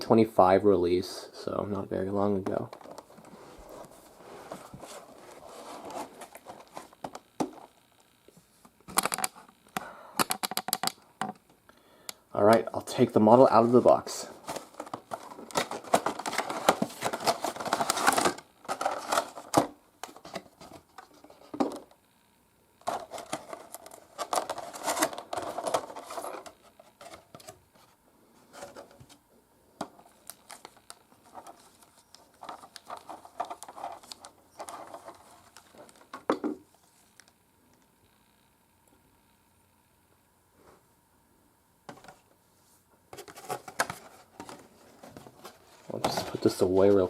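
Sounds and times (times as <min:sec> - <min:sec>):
cardboard and plastic packaging handled: 0:02.5 - 0:07.8, 0:13.3 - 0:21.9, 0:22.8 - 0:29.2, 0:29.8 - 0:37.3, 0:43.1 - 0:47.0.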